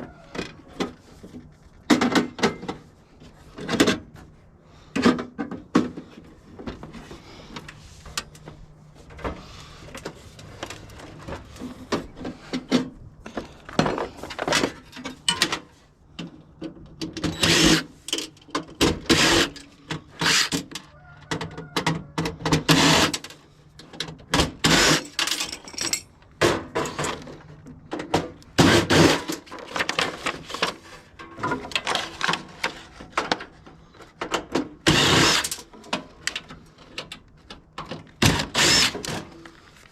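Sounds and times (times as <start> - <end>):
tools clattering on metal: 24.8 - 27.4.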